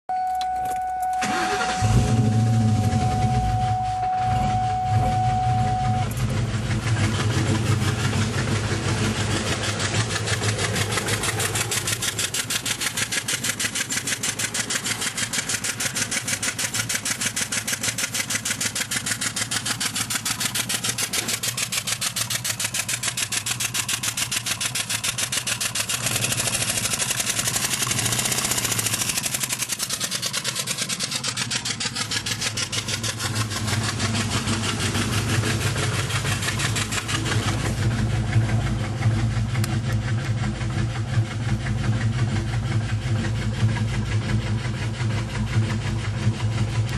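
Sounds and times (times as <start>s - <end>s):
steady tone: 0.1s - 7.0s
car engine idling: 0.2s - 46.9s
rapid engine ticking: 1.2s - 46.9s.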